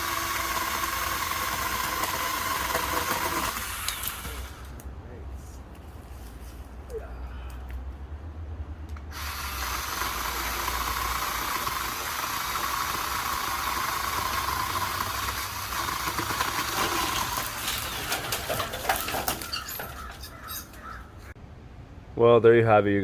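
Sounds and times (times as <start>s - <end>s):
chainsaw cutting wood: 0.0s - 4.8s, 9.1s - 20.0s.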